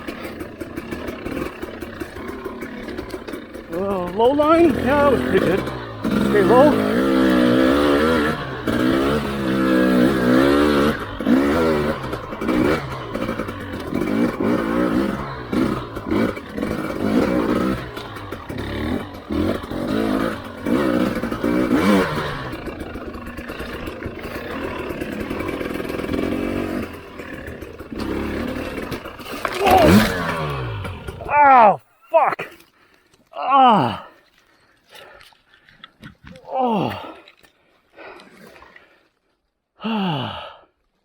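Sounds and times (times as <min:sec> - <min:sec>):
dirt bike engine revving: 0:00.0 - 0:31.8.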